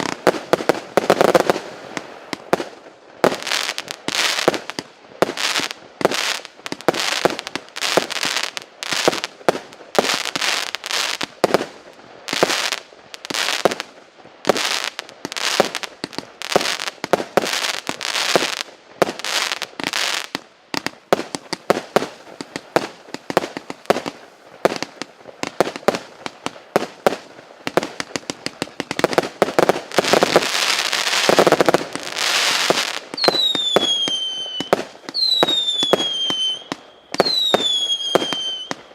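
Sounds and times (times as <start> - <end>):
fireworks firing rapid volleys: 0.0 - 38.9
falling firework whistle: 32.1 - 38.9.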